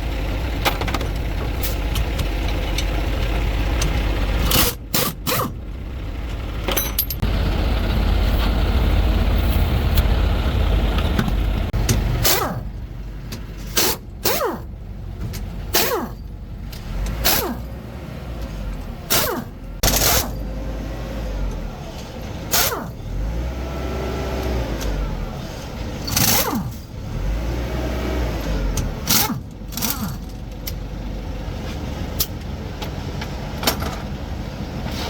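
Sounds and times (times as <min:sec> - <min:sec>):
heavy truck engine rumbling: 0:00.0 - 0:35.0
sharp metallic clanks: 0:06.6 - 0:07.2, 0:19.1 - 0:20.5.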